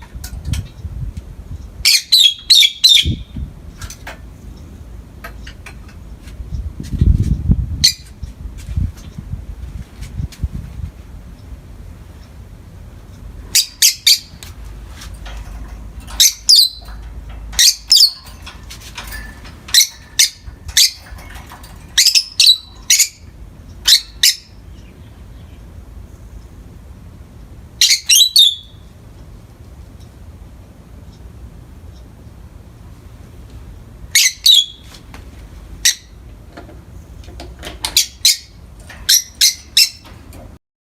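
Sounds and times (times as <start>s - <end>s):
lovebirds chirping shrilly: 1.8s - 3.4s, 13.5s - 14.4s, 16.1s - 18.3s, 19.7s - 21.3s, 21.9s - 26.4s, 27.8s - 28.9s, 34.1s - 34.9s, 38.0s - 40.0s.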